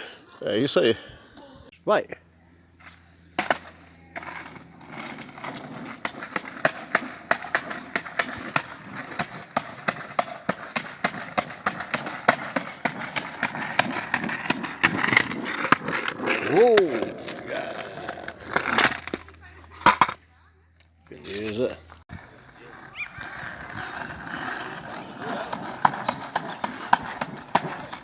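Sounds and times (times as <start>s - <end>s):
skateboard wheels rumbling: 2.8s - 20.3s, 21.4s - 28.0s
skateboard clicks: 3.4s - 20.2s, 22.7s - 28.0s.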